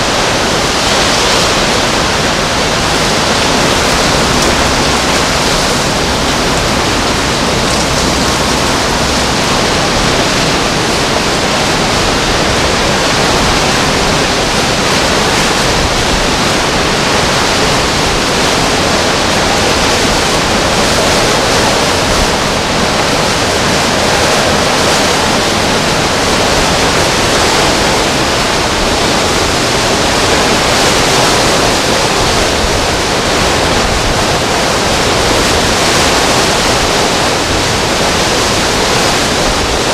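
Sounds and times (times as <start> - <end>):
strong wind with driving rain: 0.0 - 39.9.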